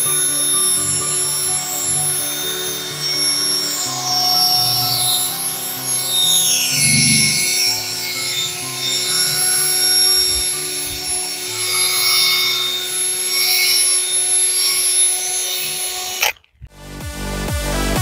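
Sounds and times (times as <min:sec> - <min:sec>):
background music with sustained tones: 0:00.0 - 0:18.0
electronic dance music with beat: 0:16.8 - 0:18.0.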